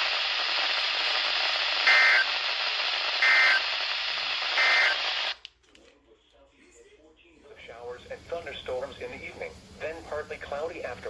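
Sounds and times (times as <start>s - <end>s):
radio static hiss: 0.0s - 5.4s, 7.6s - 11.0s
two-tone digital data bursts: 1.8s - 2.3s, 3.2s - 3.7s, 4.5s - 5.2s.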